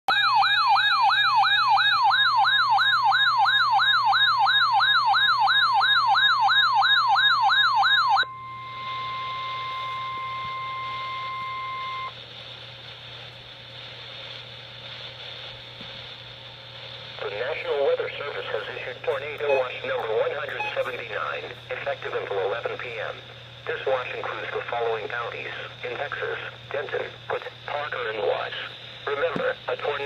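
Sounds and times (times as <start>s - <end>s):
electronic warbling alarm: 0.1s - 12.2s, 19.4s - 20.9s
steady single-pitch alarm tone: 0.1s - 12.2s, 19.2s - 21.8s
faint radio hiss: 8.5s - 30.0s.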